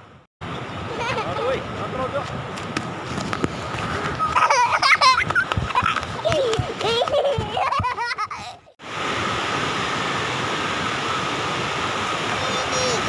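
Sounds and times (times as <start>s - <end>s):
flowing water: 0.4s - 13.0s
people laughing: 0.9s - 1.6s, 4.2s - 8.7s.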